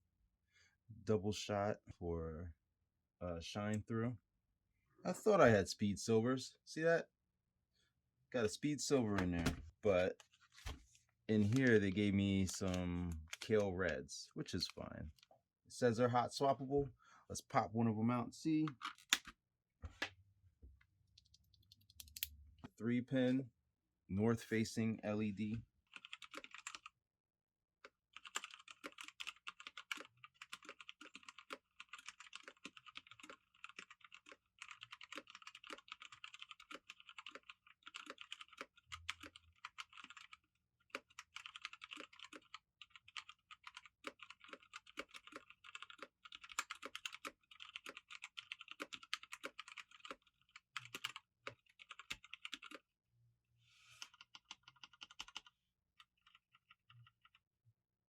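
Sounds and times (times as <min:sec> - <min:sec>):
mechanical keyboard typing: 0:25.9 - 0:26.9, 0:28.2 - 0:52.8, 0:54.0 - 0:55.5.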